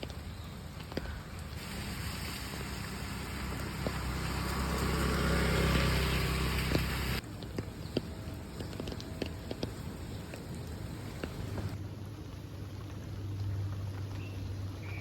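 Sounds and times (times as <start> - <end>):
rain: 0.0 - 15.0
water drips: 0.0 - 15.0
tyre hiss on wet road: 0.9 - 7.2
vehicle engine: 1.6 - 7.2.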